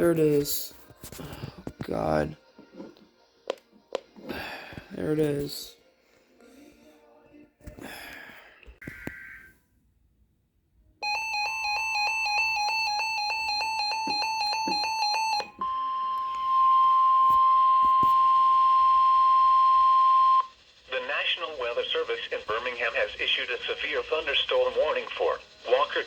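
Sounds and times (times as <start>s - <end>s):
long steady alarm tone: 11.0s - 22.8s.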